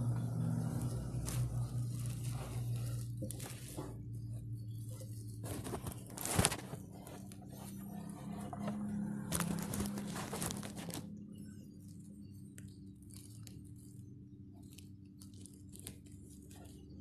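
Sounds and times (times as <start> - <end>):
oil filter scraping and handling: 0.1 - 11.0.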